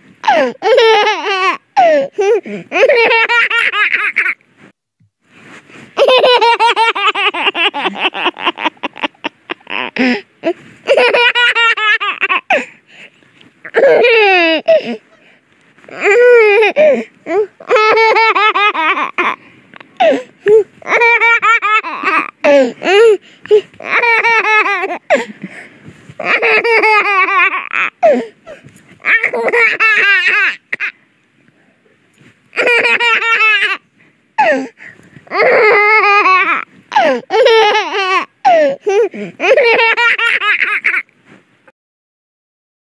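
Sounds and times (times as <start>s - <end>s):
baby laughing: 0.2s - 4.4s, 6.0s - 10.2s, 10.9s - 12.7s, 13.6s - 15.0s, 15.9s - 25.3s, 26.2s - 28.2s, 29.0s - 30.9s, 32.6s - 33.8s, 35.3s - 41.0s.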